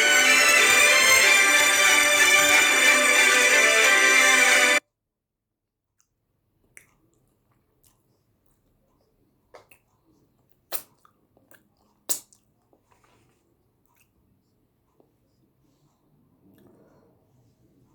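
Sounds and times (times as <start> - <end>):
background music: 0.0 - 4.8.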